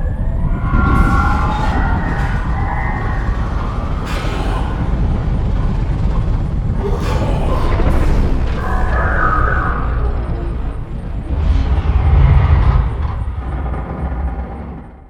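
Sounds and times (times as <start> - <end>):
wavering siren-like tones: 0.0 - 5.1, 6.8 - 11.5
heavy low rumble: 0.0 - 15.0.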